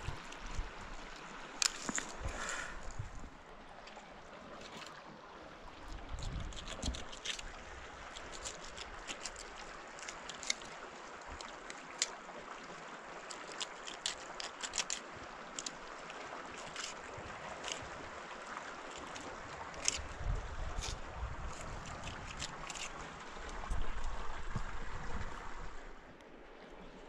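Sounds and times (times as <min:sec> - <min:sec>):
water lapping and trickling: 0:00.0 - 0:27.0
small sharp water splashes: 0:03.7 - 0:25.4.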